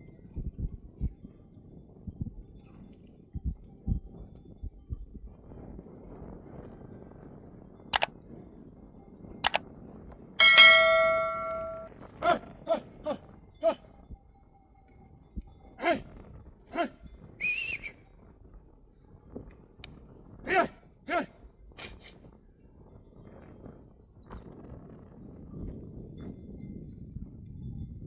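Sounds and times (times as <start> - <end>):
flock bells clanking: 10.4 - 11.9
sheep bell clanging: 10.4 - 11.9.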